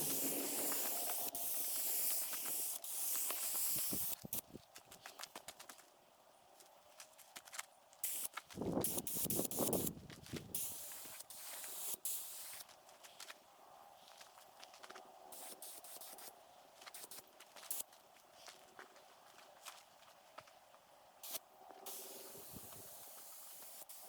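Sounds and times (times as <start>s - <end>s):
paint spray gun hissing: 0.0s - 4.4s, 8.0s - 9.9s, 10.6s - 12.6s, 15.4s - 16.3s, 21.2s - 24.0s.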